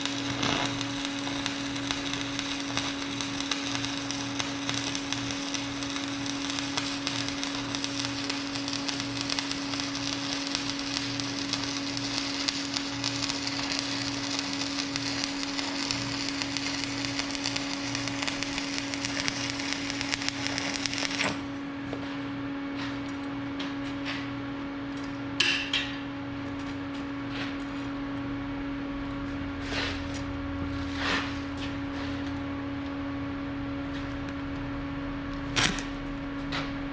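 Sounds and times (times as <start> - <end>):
welding arc crackling: 0.0 - 21.6
steady hum: 0.0 - 36.9.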